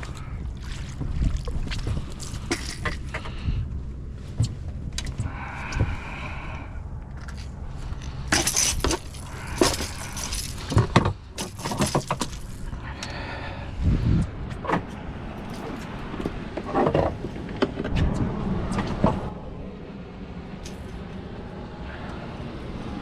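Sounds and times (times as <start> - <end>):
low steady rumble: 0.0 - 23.0.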